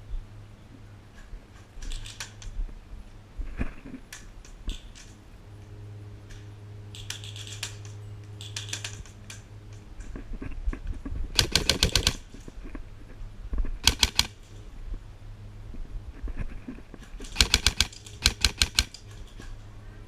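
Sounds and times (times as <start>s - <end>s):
airsoft guns firing bursts: 7.0s - 9.3s, 11.4s - 12.4s, 13.8s - 14.4s, 17.2s - 19.3s.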